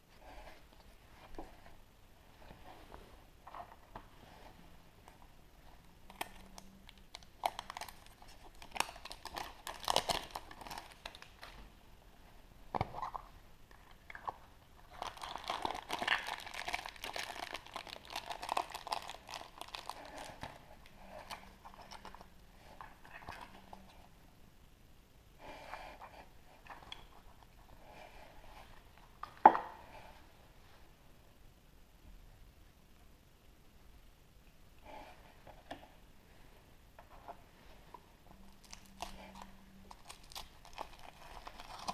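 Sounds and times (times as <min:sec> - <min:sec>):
chocolate shell cracking: 0:06.1 - 0:11.4, 0:15.0 - 0:19.9
foil wrapper crinkling and tearing: 0:06.2 - 0:11.6, 0:14.9 - 0:20.5, 0:38.6 - 0:41.9.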